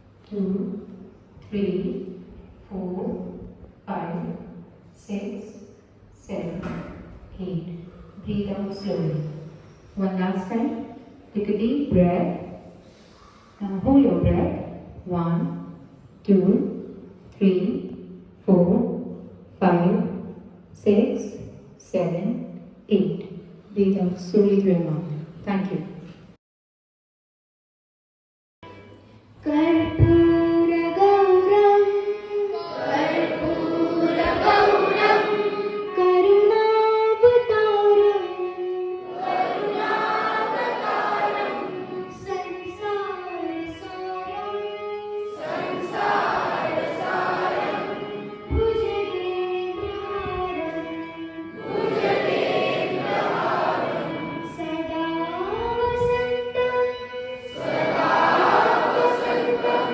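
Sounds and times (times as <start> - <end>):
children singing in unison: 32.5 - 36.0, 39.0 - 42.2, 45.2 - 49.3, 51.5 - 54.6, 57.4 - 59.9.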